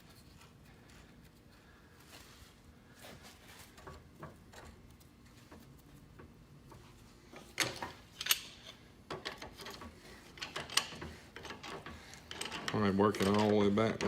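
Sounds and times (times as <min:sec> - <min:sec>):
wrench jaw metal scraping: 0:09.3 - 0:14.0.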